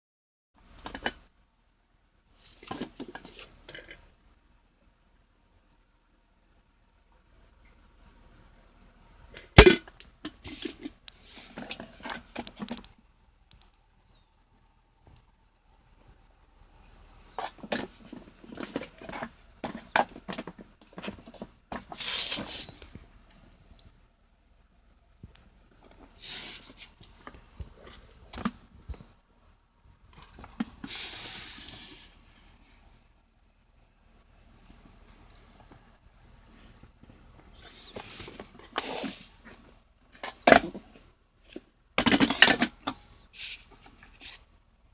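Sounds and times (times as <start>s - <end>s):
rustling hiss: 21.8s - 24.0s, 25.7s - 29.2s, 30.1s - 41.1s.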